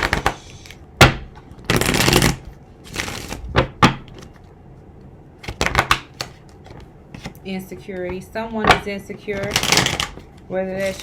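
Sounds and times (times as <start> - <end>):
cards snapping: 0.0 - 4.4, 5.4 - 7.4
cards shuffling rustle: 0.0 - 4.5, 5.4 - 7.4, 9.2 - 11.0.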